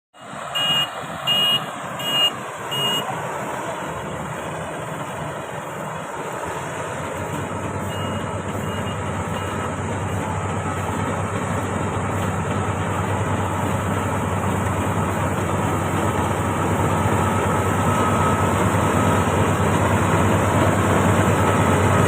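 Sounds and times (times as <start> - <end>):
reversing alarm beeping: 0.2 - 3.2, 7.6 - 11.8, 15.0 - 20.6
combine harvester engine rumbling: 0.2 - 22.0.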